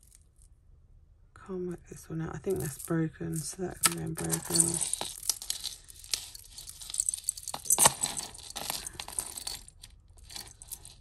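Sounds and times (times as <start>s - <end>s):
jewellery clinking and rattling: 2.4s - 11.0s.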